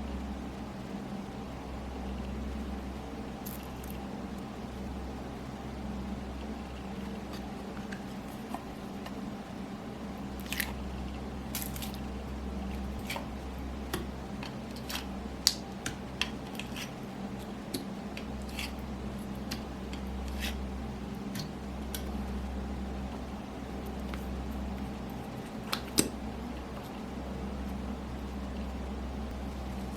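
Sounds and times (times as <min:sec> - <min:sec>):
steady low hum: 0:00.0 - 0:29.9
slime squelching: 0:10.3 - 0:22.4.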